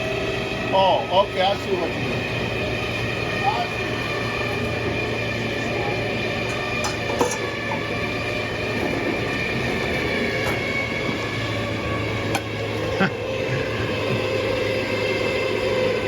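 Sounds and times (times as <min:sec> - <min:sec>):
electric winch whining: 0:00.0 - 0:16.0
metal clanks: 0:06.5 - 0:08.1.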